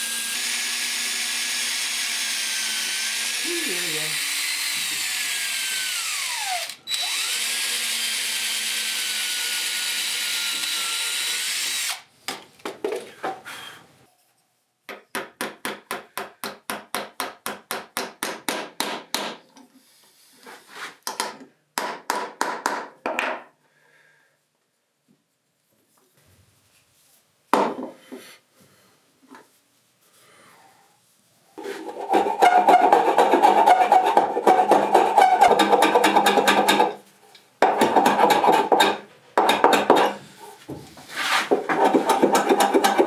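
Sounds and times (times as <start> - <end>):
power drill drilling through steel: 0.0 - 12.0
rhythmic hand-tool strokes: 31.6 - 40.5, 41.2 - 43.0.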